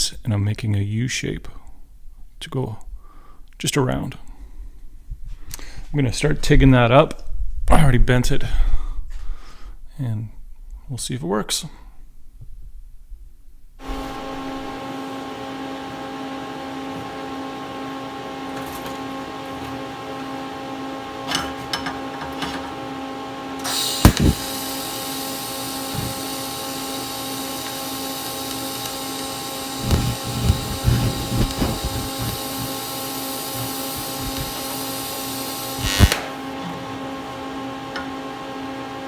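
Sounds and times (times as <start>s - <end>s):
welding arc hiss: 13.8s - 15.0s, 23.6s - 36.4s
welder arc click: 23.6s - 36.3s.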